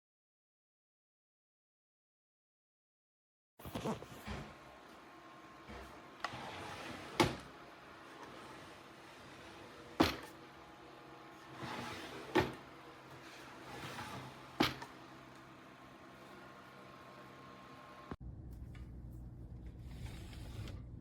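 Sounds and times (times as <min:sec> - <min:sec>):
keyboard tray sliding and knocking: 0:05.6 - 0:07.5, 0:08.1 - 0:10.4, 0:11.4 - 0:15.0.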